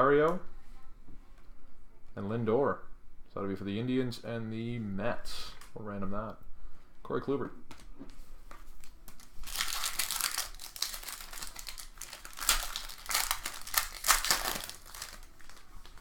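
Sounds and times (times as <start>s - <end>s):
wrapper being torn and crinkled: 8.8s - 16.0s.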